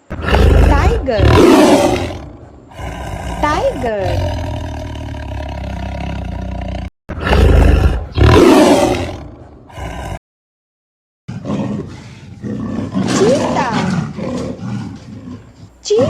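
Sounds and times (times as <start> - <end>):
tiger roaring: 0.0 - 10.2, 11.3 - 15.8.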